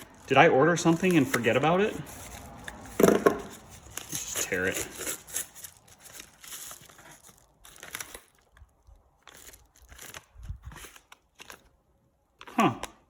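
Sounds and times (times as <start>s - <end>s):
package wrapping tearing: 0.0s - 11.8s.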